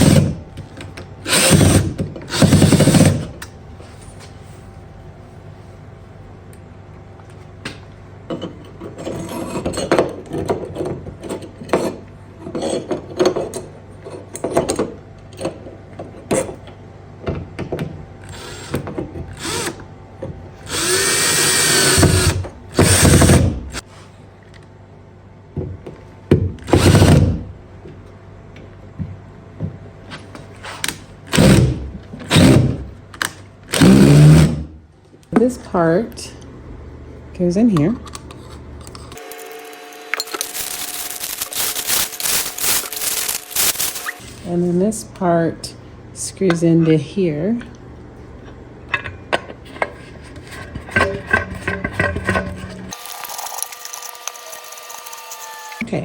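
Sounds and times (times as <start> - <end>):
cordless drill driving screws: 20.7 - 23.4, 39.2 - 44.2.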